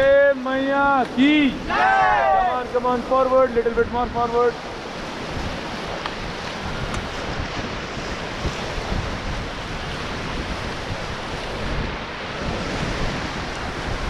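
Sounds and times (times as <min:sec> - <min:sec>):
whitewater rushing: 0:00.0 - 0:14.0
wind buffeting microphone: 0:00.0 - 0:14.0.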